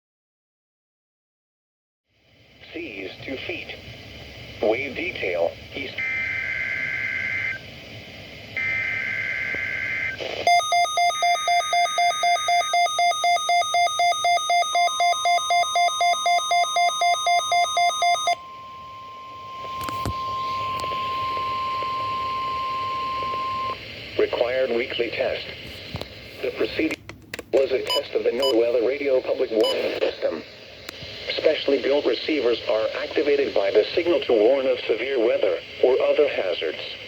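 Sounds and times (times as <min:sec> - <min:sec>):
radio alert beeping: 0:08.6 - 0:23.8, 0:27.6 - 0:28.7, 0:29.6 - 0:30.0
steady single tone: 0:10.5 - 0:23.8.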